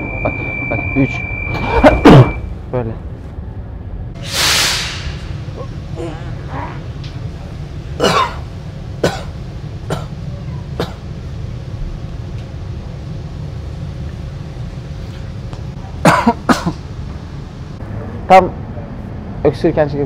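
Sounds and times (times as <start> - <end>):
metro train rumble: 0.0 - 20.0
man coughing: 1.6 - 2.4, 8.0 - 10.1, 16.0 - 16.8.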